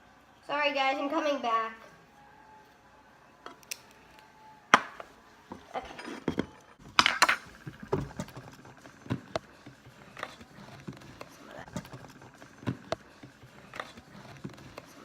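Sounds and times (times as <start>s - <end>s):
objects clinking on a table: 5.8s - 7.6s.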